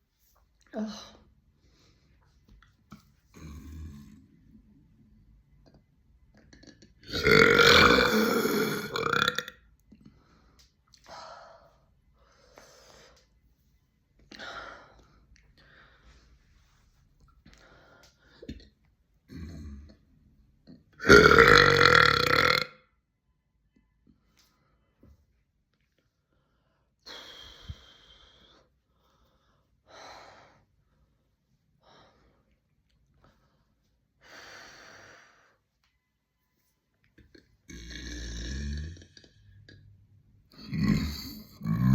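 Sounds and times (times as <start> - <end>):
person burping: 3.4 - 4.2, 6.5 - 9.6, 19.3 - 20.0, 21.0 - 22.8, 37.7 - 39.9, 40.6 - 41.9
person breathing hoarsely: 26.5 - 30.7.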